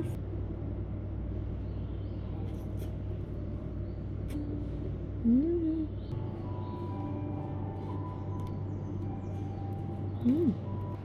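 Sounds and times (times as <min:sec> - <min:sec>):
low room hum: 0:00.0 - 0:11.0
woman humming mm: 0:05.2 - 0:06.0, 0:10.2 - 0:10.7.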